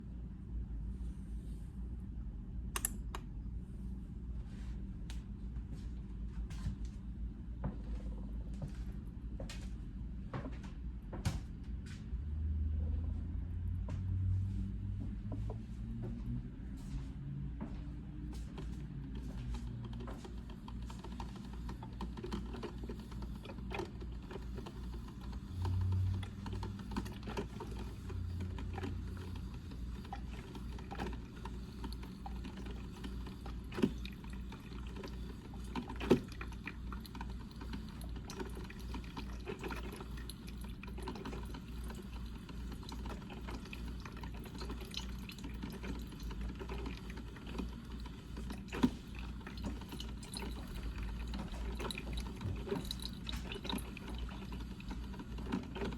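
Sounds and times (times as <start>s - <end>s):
coffee percolator bubbling: 18.8s - 55.9s.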